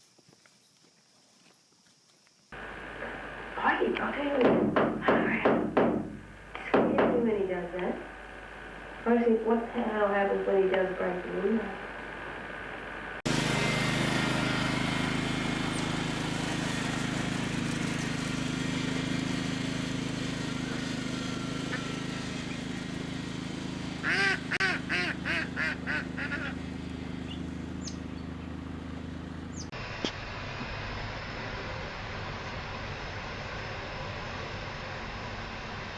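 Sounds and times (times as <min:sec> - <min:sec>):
low hum and hiss: 0:02.6 - 0:13.2
waterfowl honking: 0:20.3 - 0:22.8, 0:23.9 - 0:26.6.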